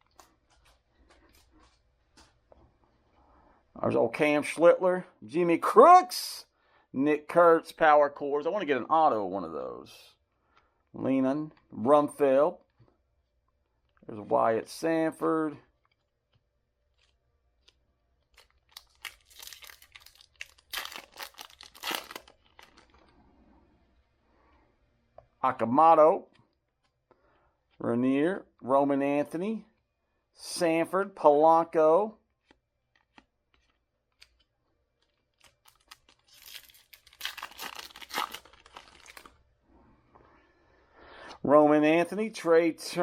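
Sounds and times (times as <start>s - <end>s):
foil wrapper tearing and crinkling: 17.0s - 23.1s, 35.1s - 39.4s
cards being handled: 32.4s - 39.4s.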